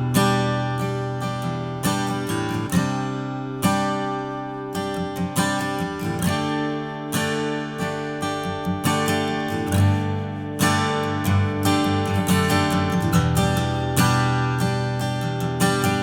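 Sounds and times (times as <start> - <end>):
acoustic guitar strumming chords: 0.0 - 16.0.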